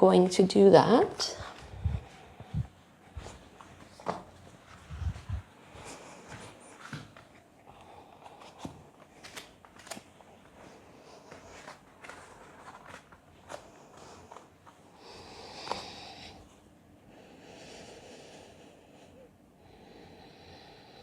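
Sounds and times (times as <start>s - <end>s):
taps and rustles on mat: 3.2s - 4.5s.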